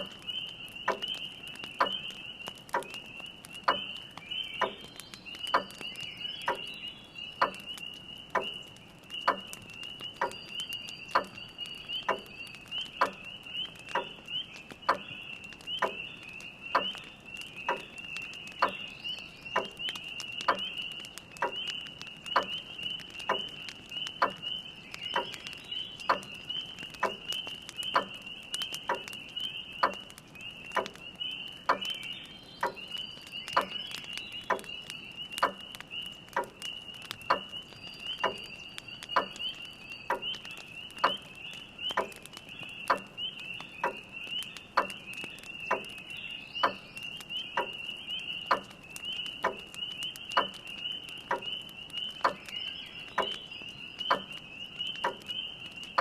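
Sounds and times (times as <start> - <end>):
fire crackling: 0.0 - 56.0
spring peepers chorus: 0.0 - 56.0.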